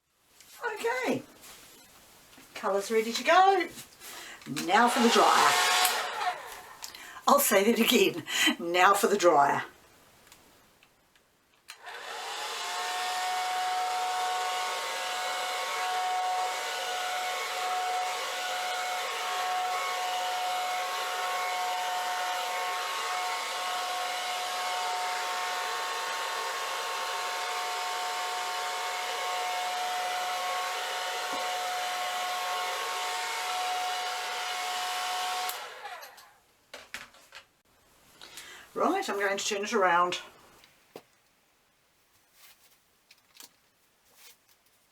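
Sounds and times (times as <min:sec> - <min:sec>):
hair dryer motor whine: 0:04.6 - 0:07.0, 0:11.7 - 0:36.4.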